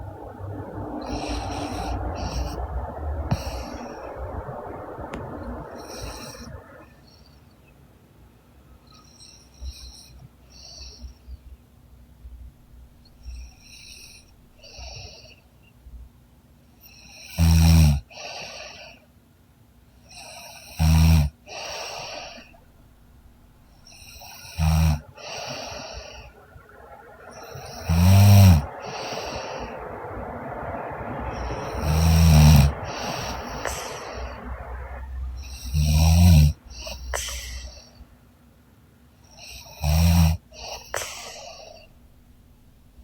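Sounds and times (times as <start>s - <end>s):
breathy exhale: 21.5s - 38.2s, 39.3s - 42.5s
woman snoring: 35.4s - 37.9s, 39.4s - 41.8s.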